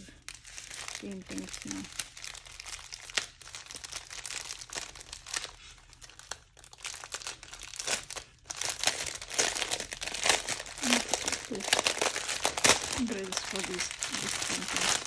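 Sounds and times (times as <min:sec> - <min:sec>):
plastic packaging crinkling: 0:00.0 - 0:15.0.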